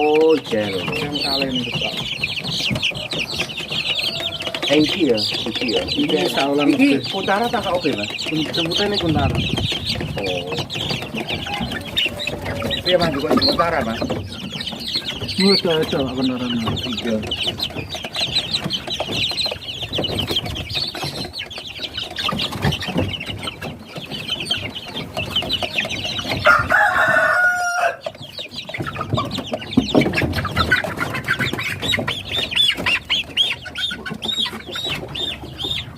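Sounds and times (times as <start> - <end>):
chickens clucking and peeping: 0.0 - 35.9
rooster crowing: 3.8 - 4.6, 11.2 - 13.0, 26.4 - 28.0.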